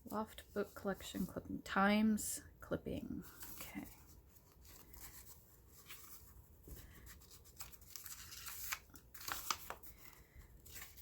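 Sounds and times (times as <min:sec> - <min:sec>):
paper rustling and crinkling: 0:03.2 - 0:11.0.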